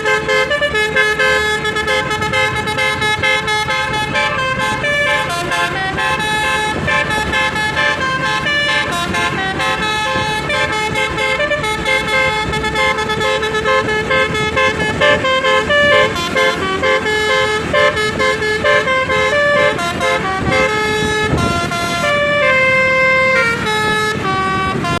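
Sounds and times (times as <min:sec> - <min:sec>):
multi-tone bus horn melody: 0:00.0 - 0:25.0.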